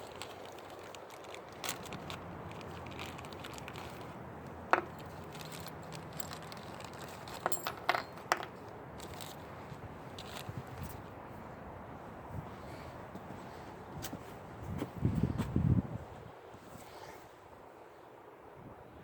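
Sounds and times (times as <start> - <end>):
small hard objects clicking: 0.0 - 9.4.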